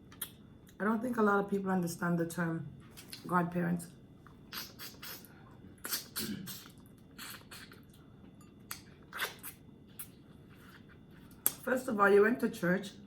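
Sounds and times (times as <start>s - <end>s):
closed-mouth hum: 2.6s - 11.8s
wet chewing and lip smacks: 8.6s - 11.6s.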